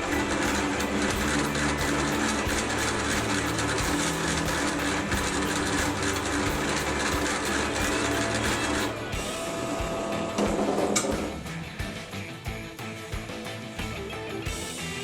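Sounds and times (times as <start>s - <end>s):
drill press cutting wood: 0.0s - 11.4s.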